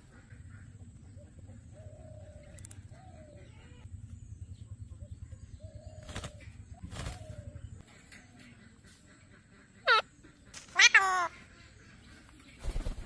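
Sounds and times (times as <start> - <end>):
steady low rumble: 0.0 - 8.0
faint bird calls: 0.0 - 13.0.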